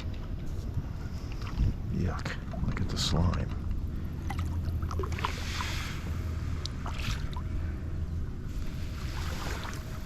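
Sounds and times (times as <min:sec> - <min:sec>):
wind rumble on microphone: 0:00.0 - 0:10.0
water splashing against kayak: 0:04.2 - 0:07.5, 0:08.5 - 0:10.0.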